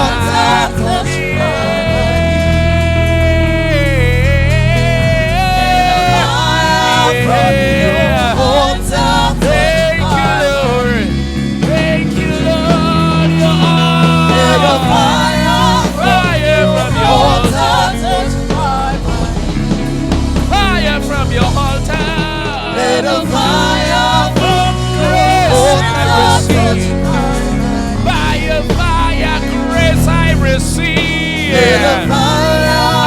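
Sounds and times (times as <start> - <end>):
person singing gliding melody: 0.0 - 19.8
band playing sustained low chords: 0.0 - 33.0.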